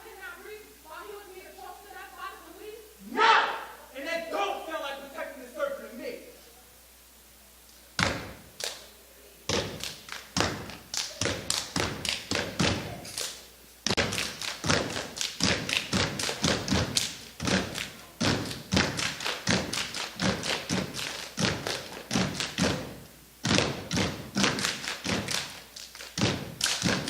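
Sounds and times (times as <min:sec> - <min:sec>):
rhythmic stomps and slaps: 0:08.0 - 0:08.8, 0:09.5 - 0:27.0.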